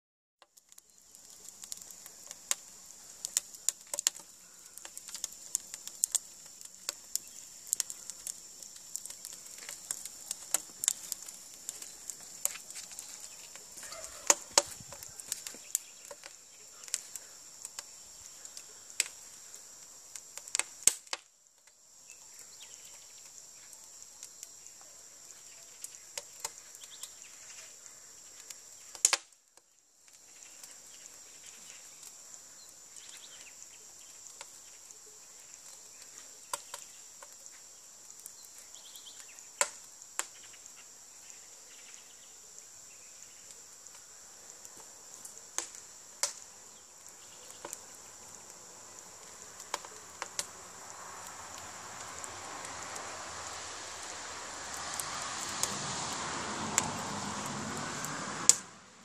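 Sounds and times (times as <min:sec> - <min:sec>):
tapping stones and bricks: 0:00.4 - 0:17.9
steady high hiss: 0:00.7 - 0:59.0.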